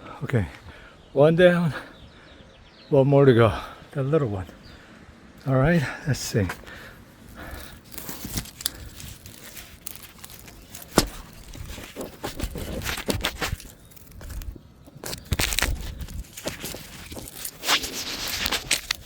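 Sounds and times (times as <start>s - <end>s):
palm debris rustling and crunching: 5.8s - 19.0s.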